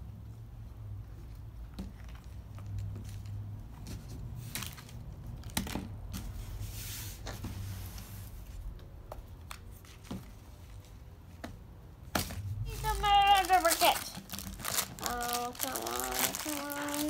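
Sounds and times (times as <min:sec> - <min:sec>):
low steady hum: 0:00.0 - 0:17.0
packaging tearing rustle: 0:12.7 - 0:17.0
plastic packaging crinkling: 0:12.7 - 0:17.0.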